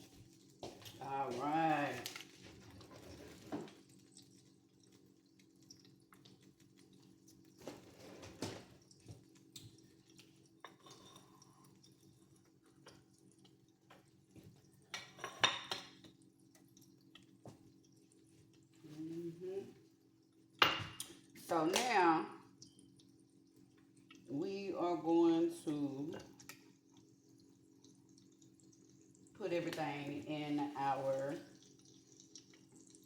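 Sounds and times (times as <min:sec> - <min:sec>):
dishes clattering: 0:15.0 - 0:15.9, 0:20.6 - 0:21.1.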